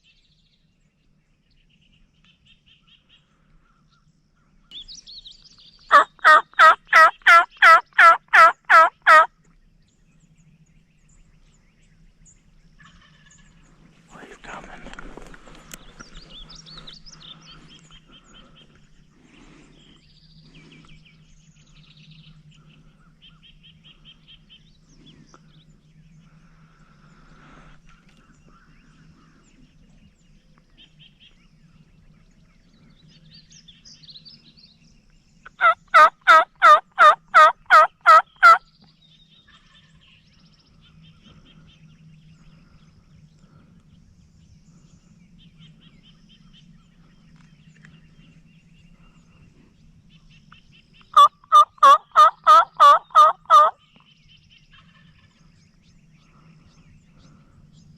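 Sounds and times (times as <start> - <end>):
faint songbird chirps: 0.0 - 57.9
turkey yelping: 5.9 - 9.3, 35.6 - 38.6, 51.2 - 53.8.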